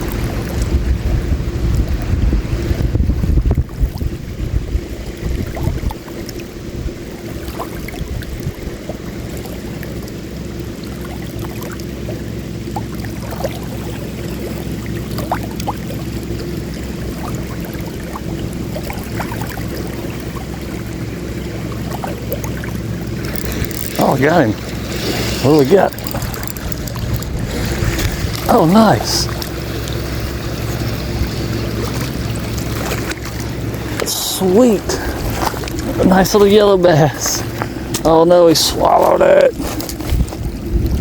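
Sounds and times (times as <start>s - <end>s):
wind rumble on microphone: 0.0s - 9.3s, 16.3s - 34.0s, 39.5s - 41.0s
little splashes: 0.0s - 41.0s
small waves lapping: 0.0s - 41.0s.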